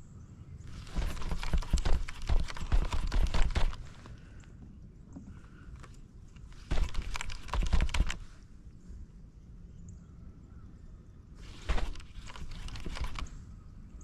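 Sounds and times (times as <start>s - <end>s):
rapid clattering clicks and knocks: 0.7s - 4.0s, 6.6s - 8.2s, 11.5s - 13.3s.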